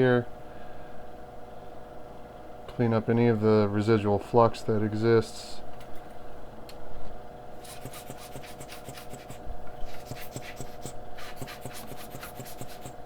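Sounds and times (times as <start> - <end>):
steady hum: 0.0 - 13.0
cotton swab scrubbing circuit board: 7.6 - 13.0.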